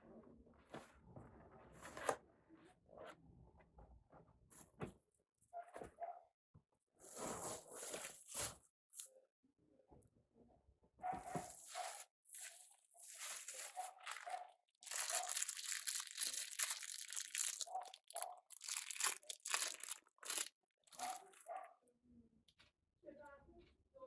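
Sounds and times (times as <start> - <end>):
plastic packaging crinkling: 11.5 - 21.4.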